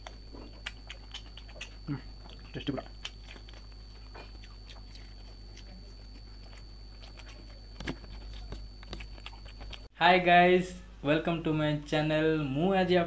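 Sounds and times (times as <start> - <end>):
person chewing food: 0.0 - 9.9
low electrical hum: 0.0 - 13.0.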